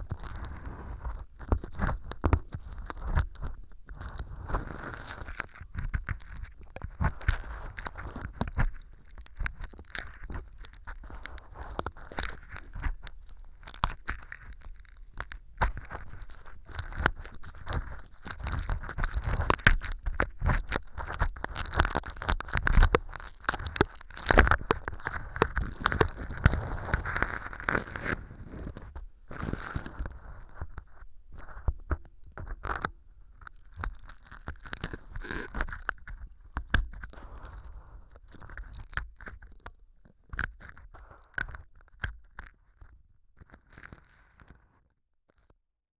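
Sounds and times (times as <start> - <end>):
ear pick scraping and crackling: 0.0 - 42.5.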